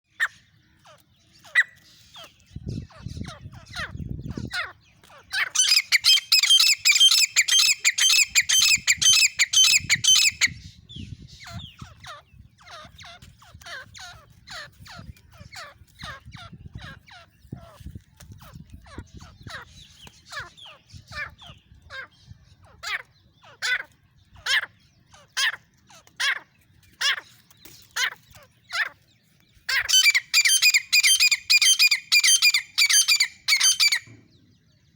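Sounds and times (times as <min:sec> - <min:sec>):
francolin calling: 0:05.4 - 0:10.6, 0:29.7 - 0:34.1.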